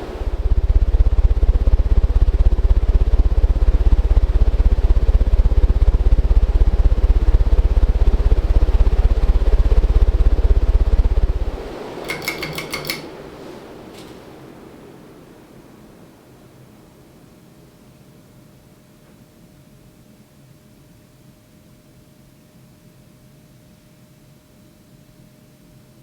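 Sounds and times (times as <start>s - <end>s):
ceiling fan draft pulsing on microphone: 0.0s - 26.0s
sharp clicks: 12.0s - 13.1s.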